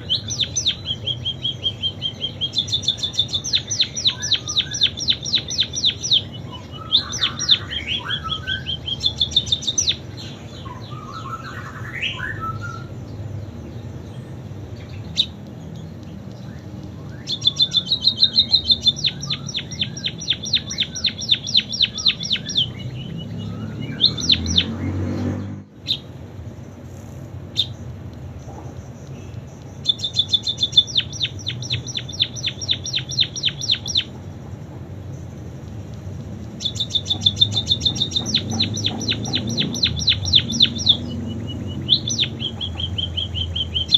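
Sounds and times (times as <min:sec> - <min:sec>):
single bird calls: 0:00.0 - 0:13.0, 0:16.5 - 0:25.0, 0:36.6 - 0:43.9
songbird trilling song: 0:00.0 - 0:43.9.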